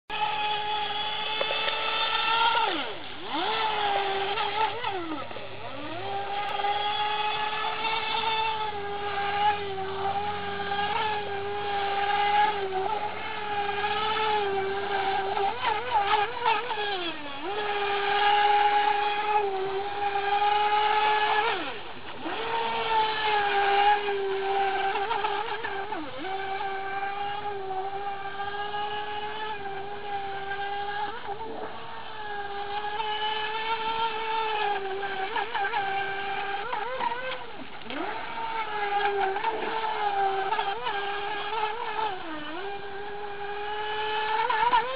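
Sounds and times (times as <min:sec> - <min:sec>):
rc boat motor whining: 0:00.1 - 0:44.9.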